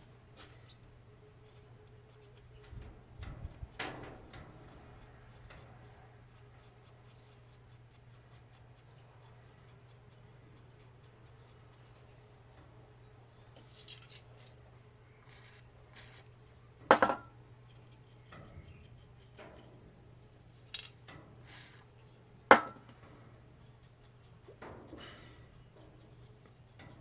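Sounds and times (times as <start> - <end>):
handling noises: 12.6 - 17.3, 19.4 - 23.5
metal tools clinking: 13.6 - 14.6, 20.6 - 21.8, 22.5 - 22.9.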